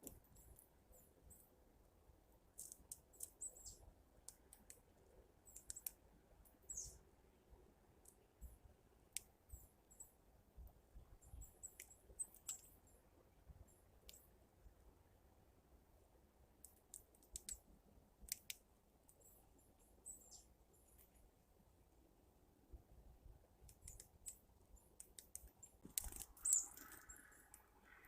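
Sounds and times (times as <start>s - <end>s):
faint bird chirps: 2.6s - 3.9s, 5.0s - 5.9s, 6.5s - 7.6s, 8.4s - 10.2s, 10.9s - 14.3s, 19.2s - 21.1s, 23.8s - 28.0s.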